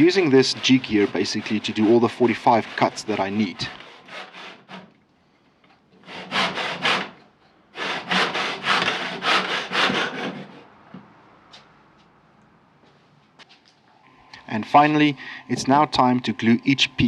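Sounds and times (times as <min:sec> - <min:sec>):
hand saw cutting wood: 0:00.0 - 0:04.9, 0:06.0 - 0:10.6.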